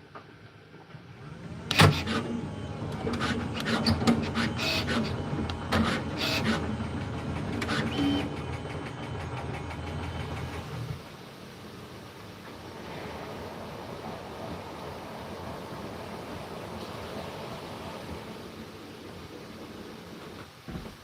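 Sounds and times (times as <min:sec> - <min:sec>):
printer motor hum: 0:01.2 - 0:11.1
printer parts clicking and clunking: 0:01.7 - 0:08.6.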